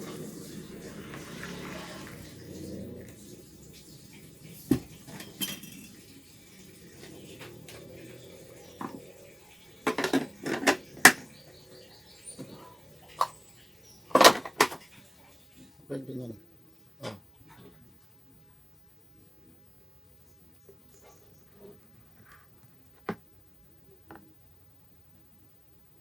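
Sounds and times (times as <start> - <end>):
dishes and utensils clinking: 4.6 - 8.0, 8.6 - 11.4, 14.1 - 15.0.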